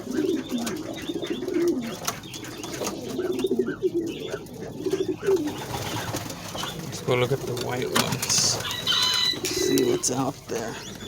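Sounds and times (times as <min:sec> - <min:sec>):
pigeons cooing: 0:00.0 - 0:11.0.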